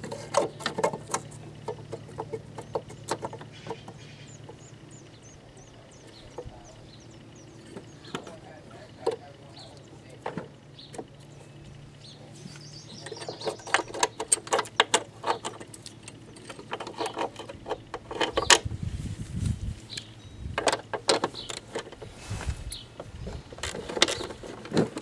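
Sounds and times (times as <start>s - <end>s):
low rumbling scrape: 18.1s - 20.5s.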